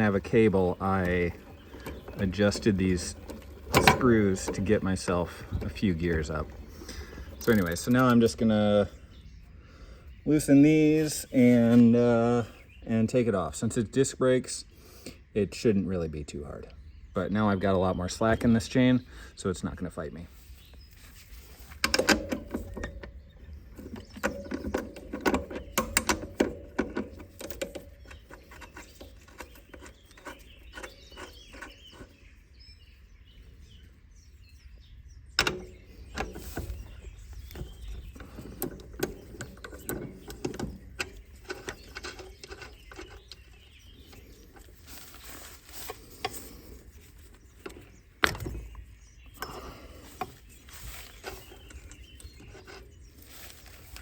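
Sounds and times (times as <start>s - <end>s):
metallic clicks and rattles of tools: 6.5s - 8.3s, 21.7s - 31.8s.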